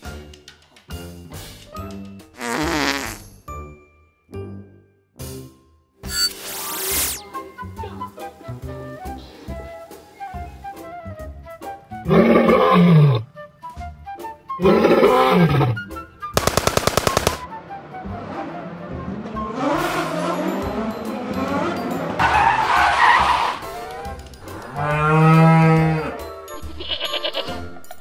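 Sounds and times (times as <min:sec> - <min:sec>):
background music: 0:00.0 - 0:28.0
rapid sharp pops: 0:16.4 - 0:17.4.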